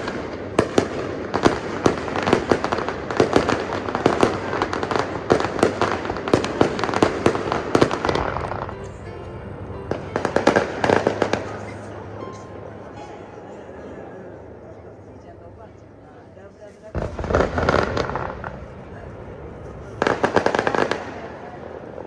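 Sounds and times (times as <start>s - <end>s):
fireworks bangs and crackles: 0.0s - 8.9s, 9.9s - 11.8s, 16.9s - 22.0s.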